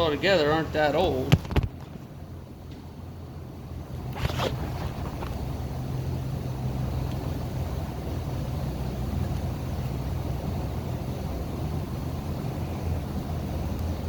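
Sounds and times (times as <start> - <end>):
milking machinery hum: 0.0 - 14.0
sharp scraping: 4.0 - 5.4.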